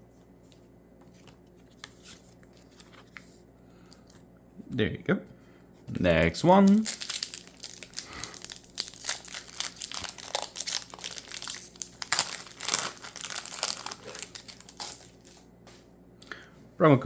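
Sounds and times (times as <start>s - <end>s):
foil wrapper crinkling: 6.6s - 15.5s.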